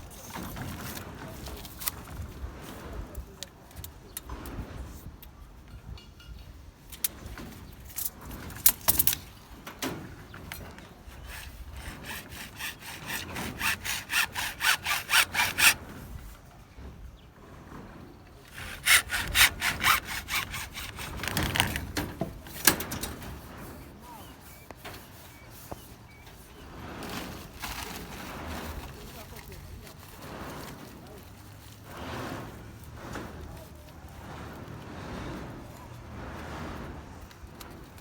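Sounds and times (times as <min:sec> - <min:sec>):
hand saw strokes: 0:10.4 - 0:16.1, 0:18.4 - 0:23.4, 0:27.0 - 0:38.0.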